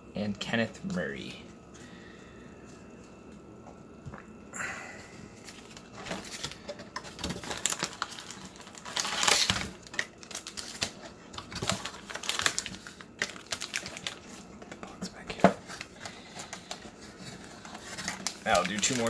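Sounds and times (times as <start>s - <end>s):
wrapper rustling: 5.4s - 19.0s.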